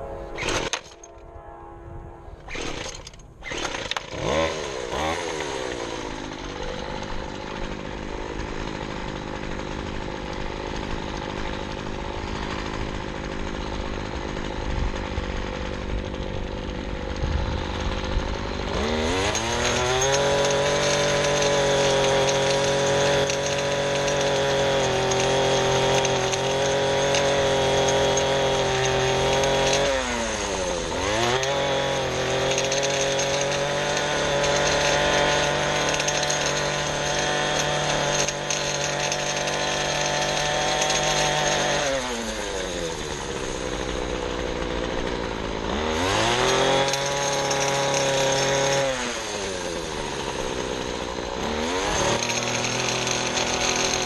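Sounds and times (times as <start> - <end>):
string trimmer engine revving: 0.0 - 1.2, 2.4 - 54.0.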